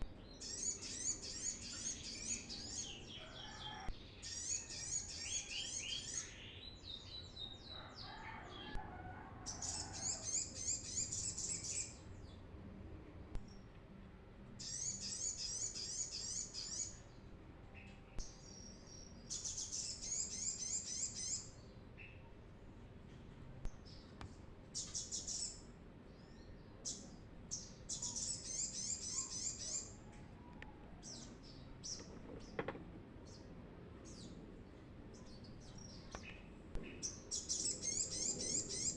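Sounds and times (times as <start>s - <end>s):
sunbird chirping: 0.2s - 3.6s, 24.8s - 30.0s.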